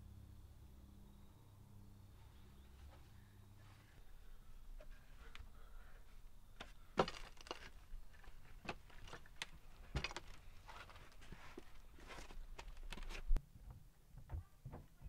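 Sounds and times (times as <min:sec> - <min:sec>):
knocks and clatter of hard objects: 0:07.0 - 0:11.1.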